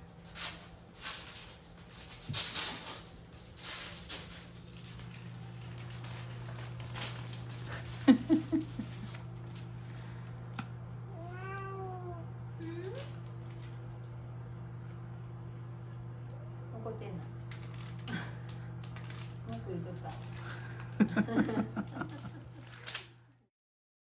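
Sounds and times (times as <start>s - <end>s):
rustling and shuffling: 0.0s - 10.5s
low hum: 12.0s - 22.9s.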